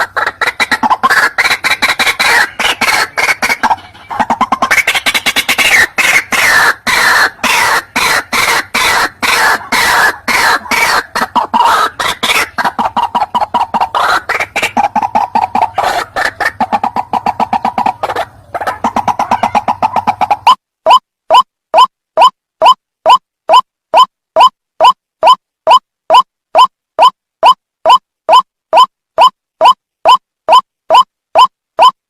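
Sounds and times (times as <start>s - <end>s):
waterhen calling harshly: 0.0s - 24.1s.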